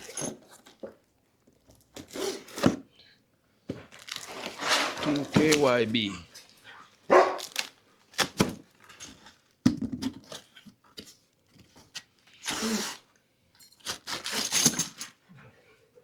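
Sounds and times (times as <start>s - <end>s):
packaging rustling and crinkling: 3.8s - 6.1s, 7.4s - 9.5s.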